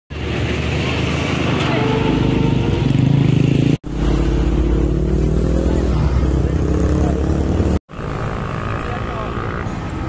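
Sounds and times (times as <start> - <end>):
motorcycle engines running: 2.3 - 10.0.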